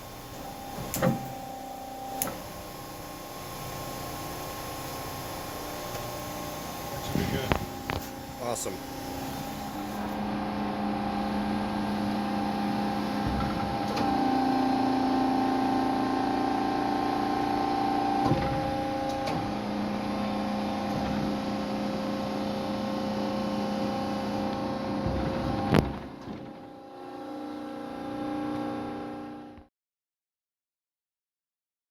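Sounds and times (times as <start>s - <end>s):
band saw humming: 4.2s - 21.9s.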